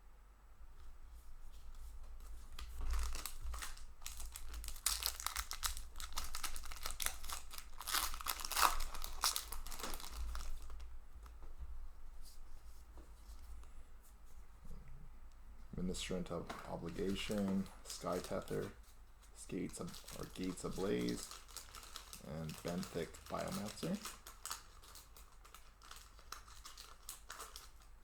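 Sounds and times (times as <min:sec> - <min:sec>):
plastic wrapper tearing and crinkling: 0:02.6 - 0:10.9, 0:16.7 - 0:18.8, 0:19.5 - 0:28.0
cards being handled: 0:16.0 - 0:24.9.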